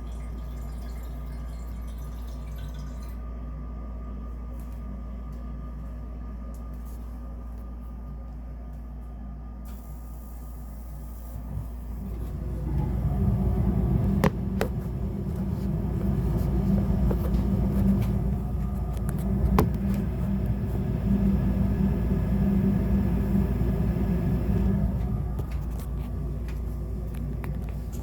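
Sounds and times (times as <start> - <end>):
furnace rumbling hum: 0.0 - 28.0.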